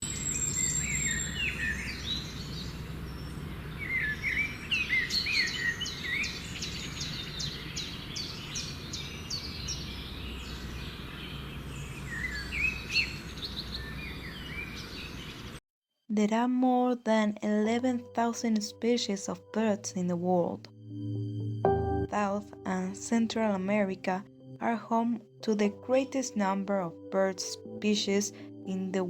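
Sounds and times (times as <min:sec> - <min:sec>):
birds chirping: 0:00.0 - 0:15.6.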